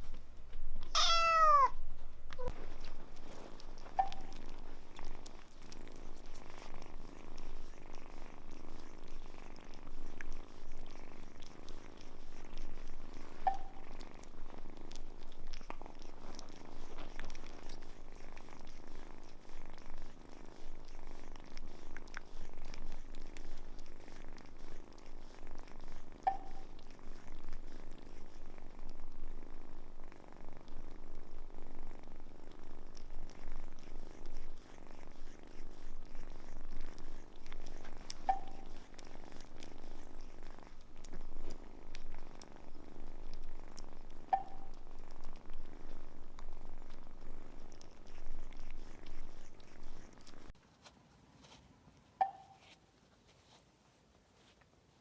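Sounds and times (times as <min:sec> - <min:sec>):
cat purring: 0:00.0 - 0:50.6
cat chirps: 0:00.9 - 0:01.8.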